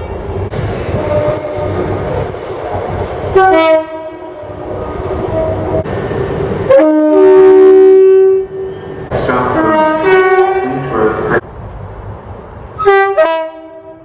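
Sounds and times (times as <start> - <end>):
passing train: 0.0 - 14.0
train horn blasts: 1.0 - 1.8, 3.4 - 5.8, 6.7 - 8.8, 9.6 - 11.0, 12.8 - 14.0.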